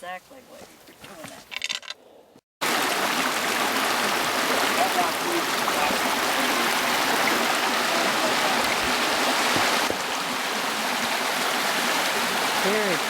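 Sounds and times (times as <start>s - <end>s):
creek water rushing: 2.6s - 13.0s.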